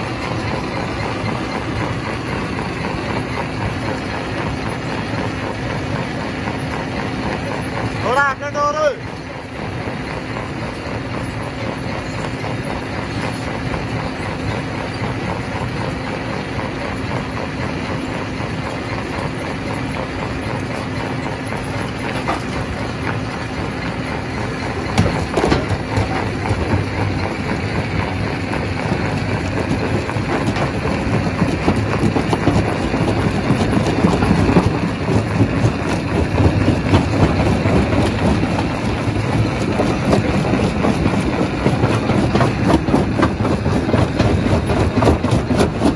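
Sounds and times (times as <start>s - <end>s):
rock crusher running: 0.0s - 45.9s
rocks rattling and clattering: 20.6s - 45.9s.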